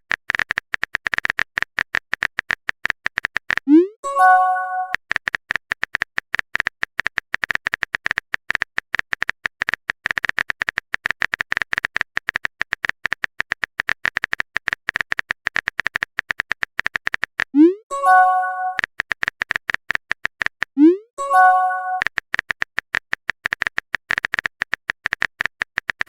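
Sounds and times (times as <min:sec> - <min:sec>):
phone keyboard typing clicks: 0:00.1 - 0:26.0
message notification chime: 0:03.7 - 0:05.0, 0:17.6 - 0:18.8, 0:20.8 - 0:22.0.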